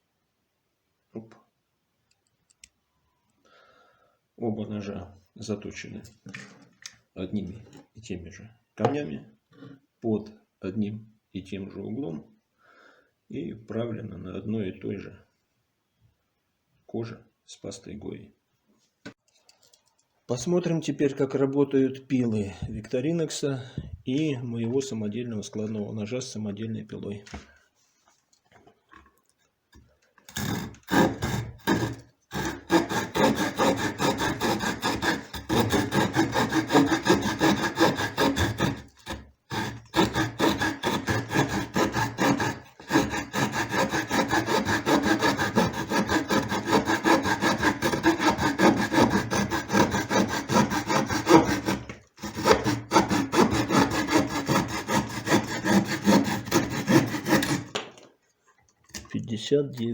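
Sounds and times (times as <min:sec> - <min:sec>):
small saw blade sawing: 0:30.3 - 0:57.8.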